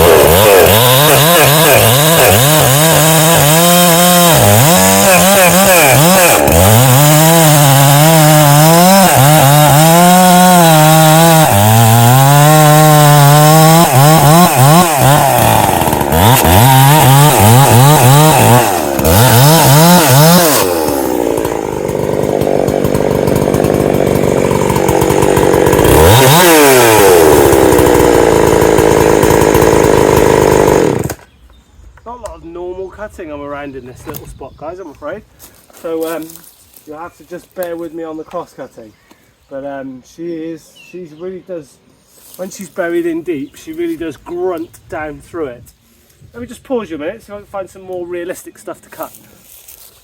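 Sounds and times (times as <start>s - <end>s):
chainsaw cutting wood: 0.0s - 31.3s.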